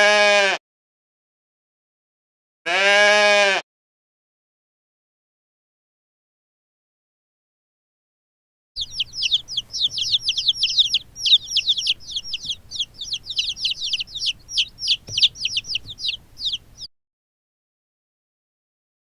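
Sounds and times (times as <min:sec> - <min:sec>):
chicks peeping: 0:08.8 - 0:16.9.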